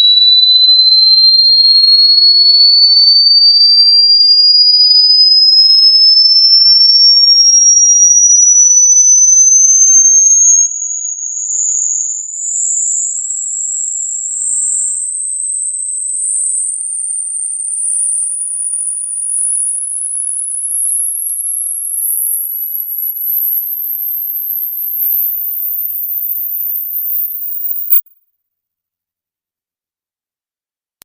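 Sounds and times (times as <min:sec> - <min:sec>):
high-pitched tone sweeping upward: 0:08.2 - 0:10.7, 0:22.4 - 0:28.0.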